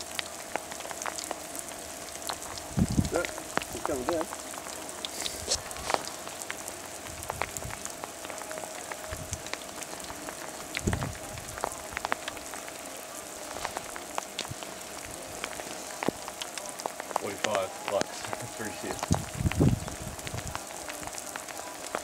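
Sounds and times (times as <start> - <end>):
rain falling: 0.0 - 22.0
raindrops ticking: 0.0 - 22.0.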